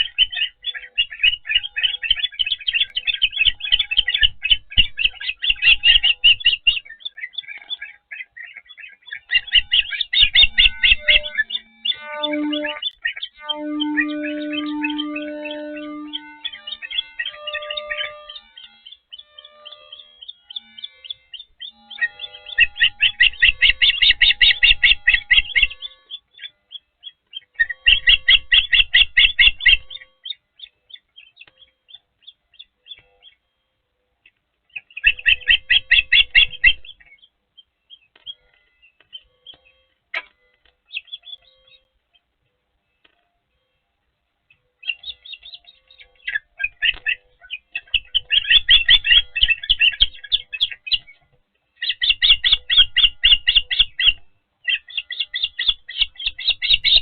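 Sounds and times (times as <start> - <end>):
ospreys chirping: 0.0 - 33.6, 34.2 - 42.4, 44.5 - 51.2, 51.8 - 57.0.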